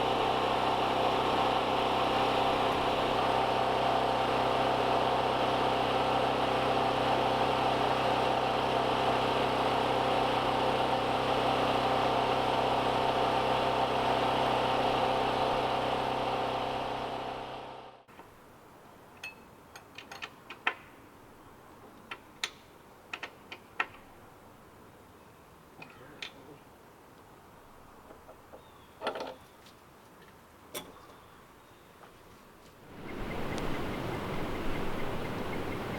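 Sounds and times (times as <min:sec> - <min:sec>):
small engine running: 0:00.0 - 0:18.1.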